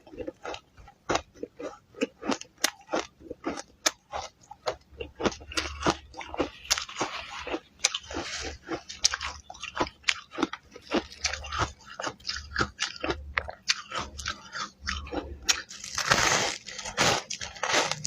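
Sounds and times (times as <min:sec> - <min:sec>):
ice crunching: 0:15.5 - 0:18.0.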